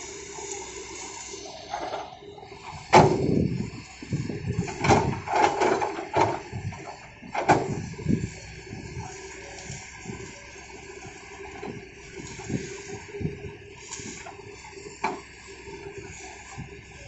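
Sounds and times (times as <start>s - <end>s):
excavator knocks and thuds: 2.8s - 3.4s, 4.6s - 7.8s.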